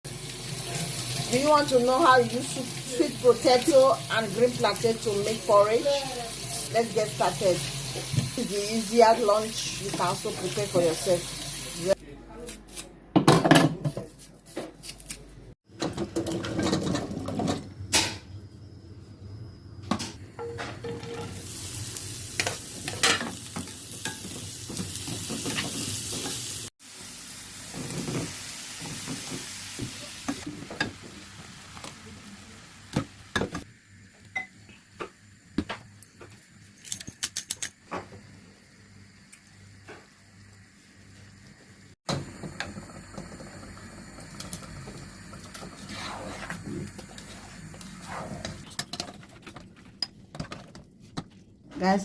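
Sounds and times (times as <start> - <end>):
food sizzling in hot oil: 0.1 - 12.0, 20.4 - 36.8, 38.2 - 48.7.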